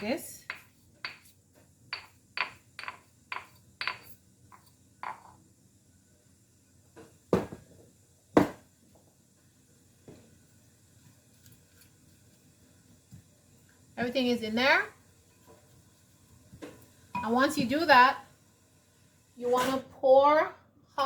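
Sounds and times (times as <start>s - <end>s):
utensil knocking in mortar: 0.0s - 1.3s, 1.9s - 5.4s, 8.4s - 8.6s.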